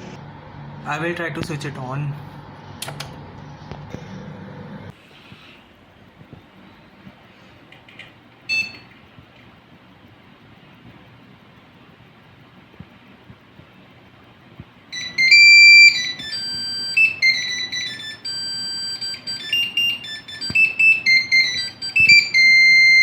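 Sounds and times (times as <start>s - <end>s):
computer fans humming: 0.0s - 23.0s
computer speaker beeping melody: 15.0s - 23.0s.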